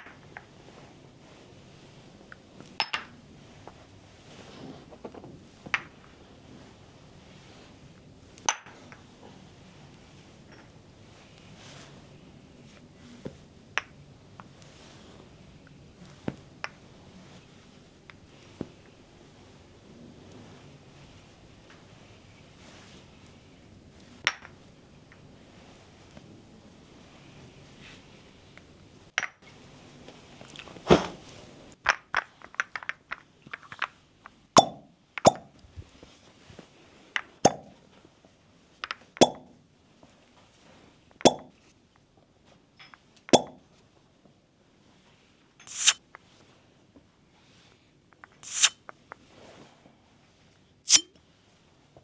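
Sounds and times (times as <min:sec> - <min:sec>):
cupping cups popping against skin: 0:34.6 - 0:35.5, 0:39.2 - 0:39.4, 0:41.3 - 0:41.5, 0:43.4 - 0:43.6.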